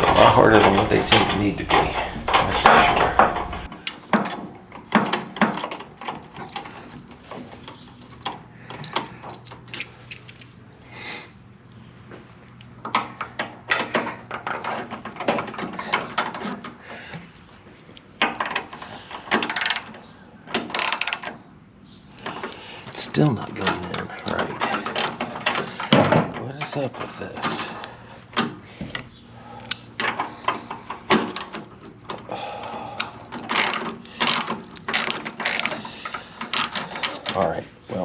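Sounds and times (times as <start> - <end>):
metal clinks: 0.0 - 3.7.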